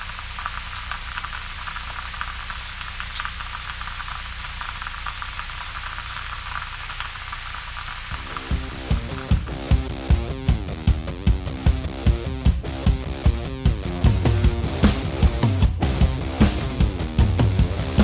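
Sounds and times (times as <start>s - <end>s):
faint hiss: 0.0s - 9.9s.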